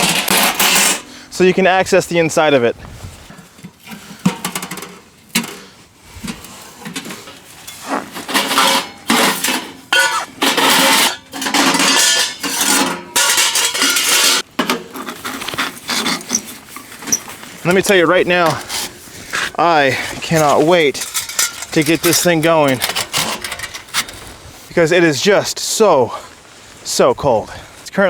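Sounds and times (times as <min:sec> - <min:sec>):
metal rattling bursts: 0:00.0 - 0:01.1, 0:07.8 - 0:14.6
metal clanking and scraping: 0:00.0 - 0:01.2, 0:03.3 - 0:24.5.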